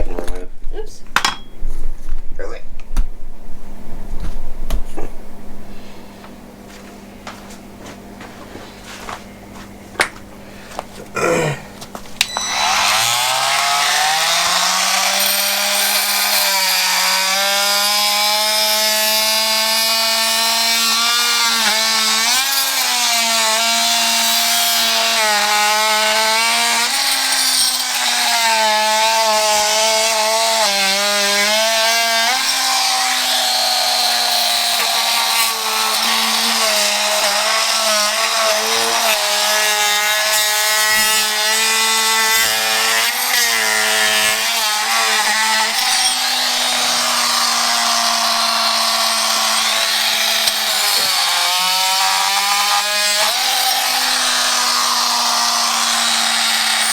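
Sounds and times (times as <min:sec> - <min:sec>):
power tool motor running: 0:12.2 - 0:56.9.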